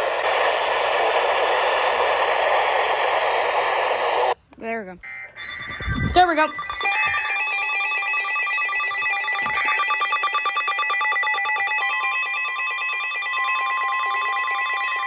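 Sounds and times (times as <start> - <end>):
steady alarm tone: 0.0 - 4.4, 5.0 - 15.0
pulsing electronic alert tones: 5.1 - 14.6.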